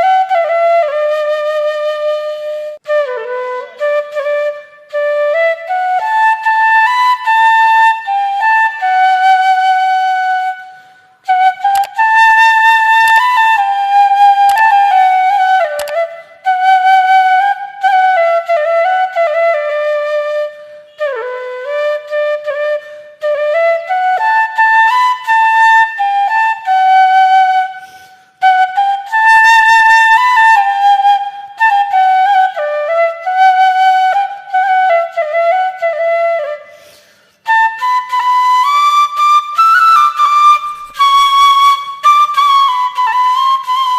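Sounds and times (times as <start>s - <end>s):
solo melody: 0.0s - 27.7s.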